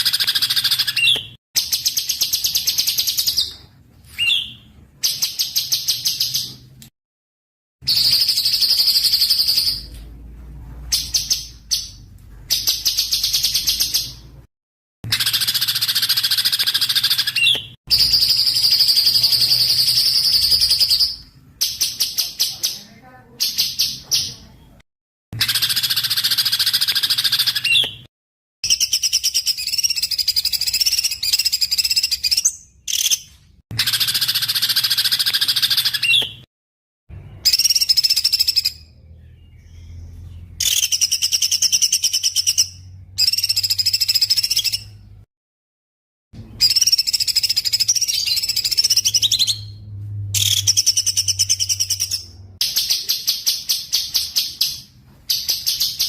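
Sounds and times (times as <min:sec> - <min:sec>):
high buzzing bird trill: 0:15.1 - 0:22.2.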